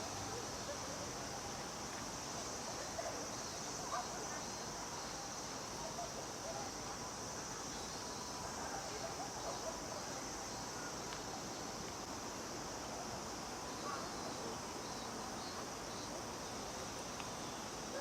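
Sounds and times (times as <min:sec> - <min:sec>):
cicadas buzzing: 0:00.0 - 0:18.0.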